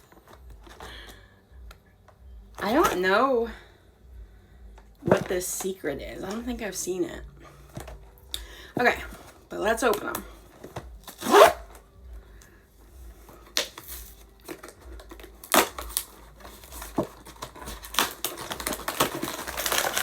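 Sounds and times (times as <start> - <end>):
packaging crinkling: 13.3 - 20.0.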